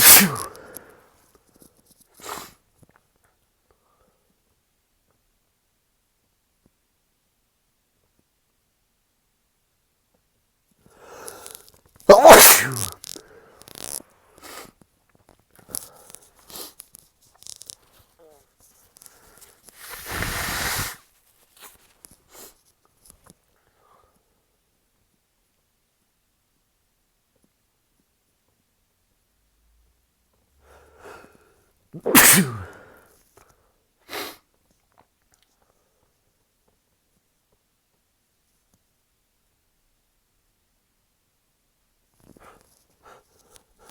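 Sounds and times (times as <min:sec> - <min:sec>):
person sneezing: 0:00.0 - 0:00.7, 0:12.1 - 0:13.0, 0:32.0 - 0:33.0
breathy intake: 0:00.0 - 0:00.8, 0:12.1 - 0:12.9, 0:32.0 - 0:32.9
short noisy breath: 0:00.0 - 0:01.0, 0:11.0 - 0:12.9, 0:32.0 - 0:33.0
short quiet breaths: 0:00.0 - 0:01.2.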